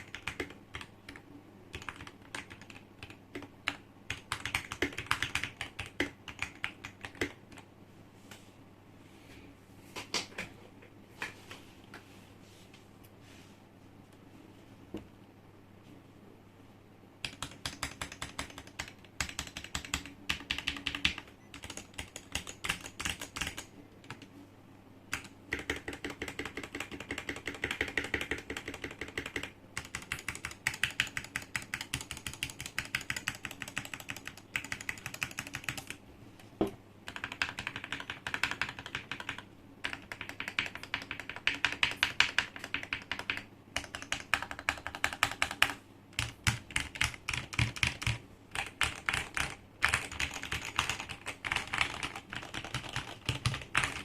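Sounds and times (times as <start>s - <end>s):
mechanical keyboard typing: 0.0s - 7.6s, 17.2s - 24.3s, 25.1s - 36.0s, 37.1s - 54.0s.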